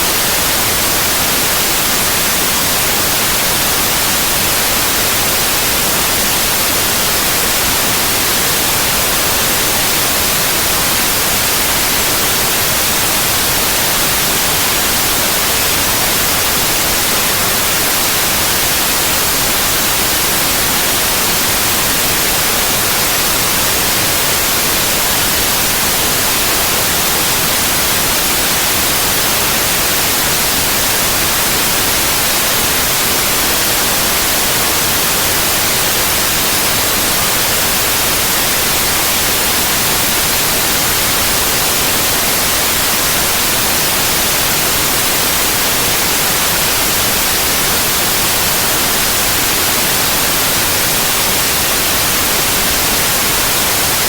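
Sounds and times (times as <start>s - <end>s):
white noise hiss: 0.0s - 54.0s.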